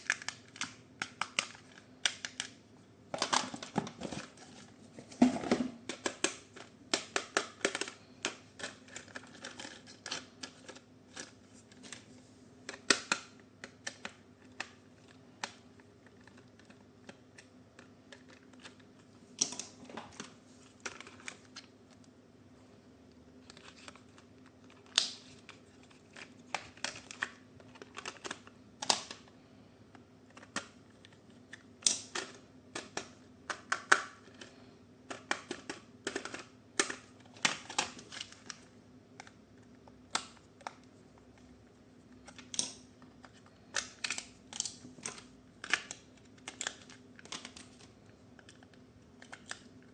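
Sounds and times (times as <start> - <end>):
plastic toy parts clicking: 35.1 - 37.8.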